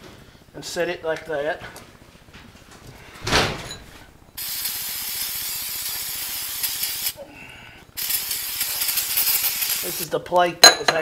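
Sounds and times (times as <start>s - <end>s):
aerosol can spraying hiss: 4.4s - 7.2s, 8.0s - 10.2s.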